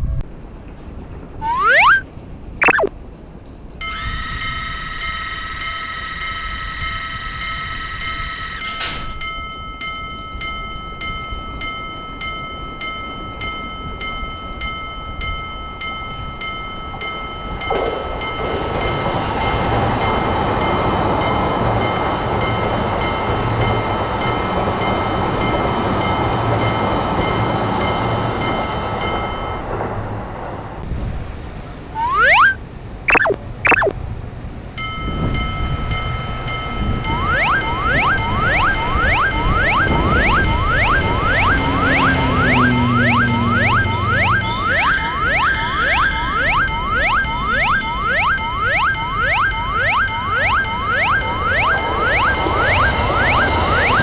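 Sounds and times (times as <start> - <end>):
whistle-like chirps: 1.4 - 2.0, 2.6 - 2.9, 32.0 - 33.9, 37.1 - 54.0
railroad crossing alarm dinging: 3.8 - 29.7, 32.0 - 33.9, 34.9 - 54.0.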